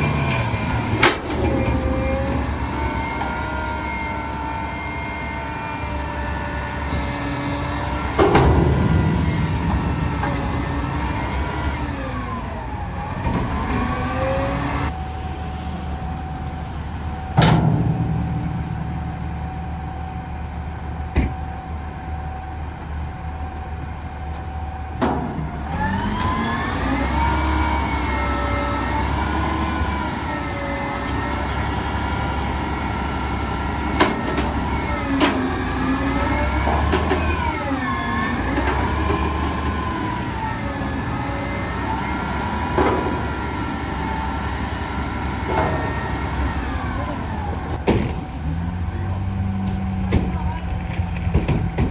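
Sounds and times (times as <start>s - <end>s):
garbage truck diesel engine: 0.0s - 51.9s
steady whine: 7.8s - 25.5s
sharp metallic clunks: 8.0s - 12.4s, 17.3s - 21.5s.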